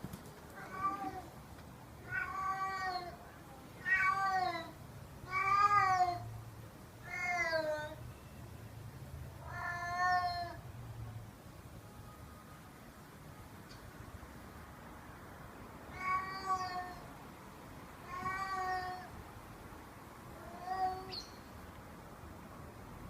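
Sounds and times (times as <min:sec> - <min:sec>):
cat meowing: 0:00.6 - 0:01.3, 0:02.0 - 0:03.2, 0:03.8 - 0:06.2, 0:07.0 - 0:08.0, 0:09.4 - 0:10.6, 0:15.9 - 0:17.1, 0:18.0 - 0:19.1, 0:20.4 - 0:21.3.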